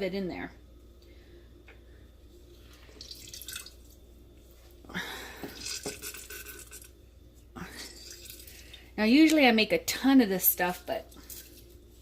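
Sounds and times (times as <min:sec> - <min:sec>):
juice dripping into a jar: 0:02.5 - 0:04.1, 0:07.8 - 0:09.0.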